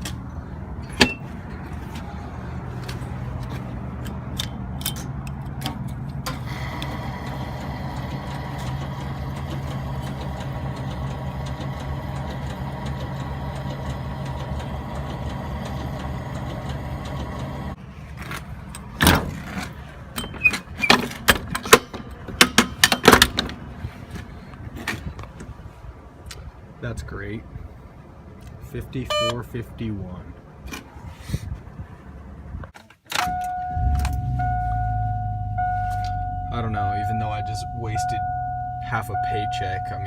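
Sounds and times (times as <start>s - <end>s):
fuel pump humming: 6.2s - 17.8s.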